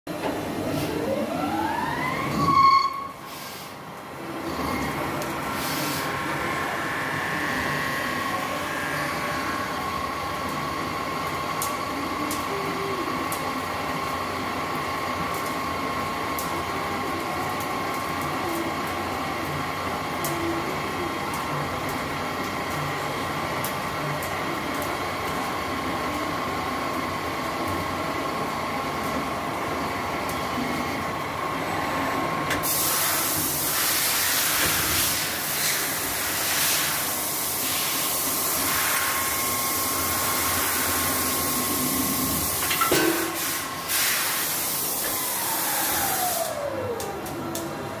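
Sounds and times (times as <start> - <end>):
lathe whining: 4.5 - 11.4.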